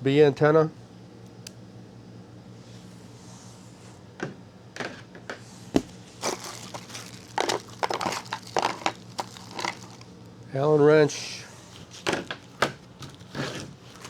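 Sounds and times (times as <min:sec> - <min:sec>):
packaging rustling and crinkling: 0:05.8 - 0:10.3, 0:11.7 - 0:14.0.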